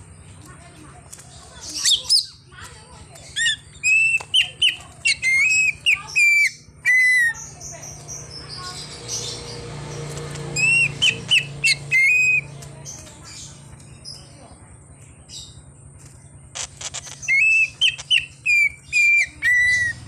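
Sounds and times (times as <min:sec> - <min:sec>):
bird singing whistled notes: 0:10.6 - 0:12.6, 0:17.2 - 0:20.0.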